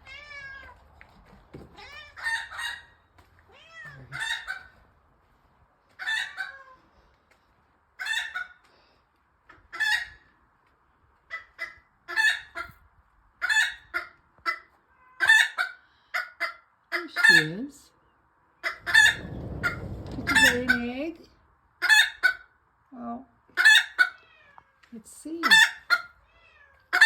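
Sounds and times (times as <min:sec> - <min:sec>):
cat meowing: 0:00.0 - 0:00.8, 0:01.7 - 0:02.5, 0:03.5 - 0:04.3, 0:14.9 - 0:15.4, 0:24.1 - 0:24.8, 0:26.2 - 0:27.0
hen cackling: 0:03.6 - 0:04.8, 0:06.0 - 0:06.8, 0:08.0 - 0:08.6, 0:11.3 - 0:12.8, 0:13.4 - 0:17.6, 0:18.6 - 0:20.9.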